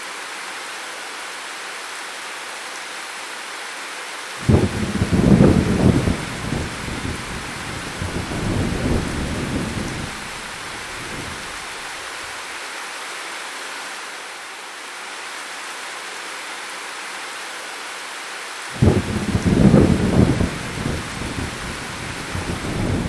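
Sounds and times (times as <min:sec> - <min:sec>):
rolling thunder rumble: 0:04.4 - 0:11.9, 0:18.8 - 0:23.0
heavy rain falling: 0:04.4 - 0:12.5, 0:18.7 - 0:23.0.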